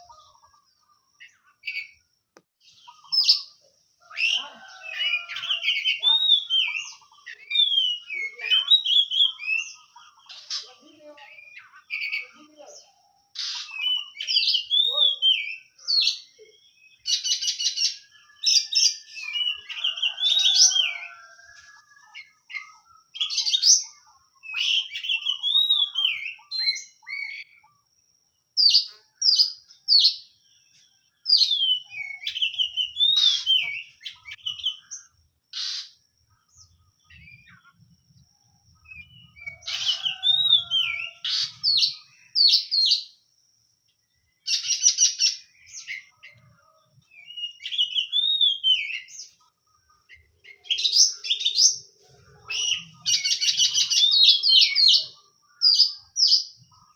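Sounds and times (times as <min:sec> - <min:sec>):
bird singing whistles and chirps: 0:02.7 - 0:12.4, 0:13.4 - 0:21.5, 0:22.1 - 0:27.6, 0:31.2 - 0:35.9, 0:38.8 - 0:43.2, 0:44.5 - 0:46.5, 0:47.1 - 0:49.3, 0:50.1 - 0:56.5.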